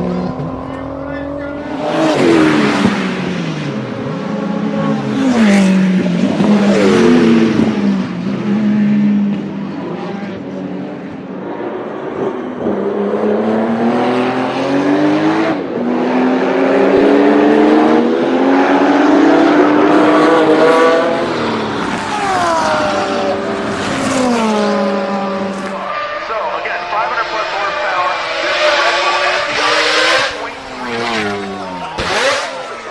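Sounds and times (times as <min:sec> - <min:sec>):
car engine accelerating: 0:00.0 - 0:32.9.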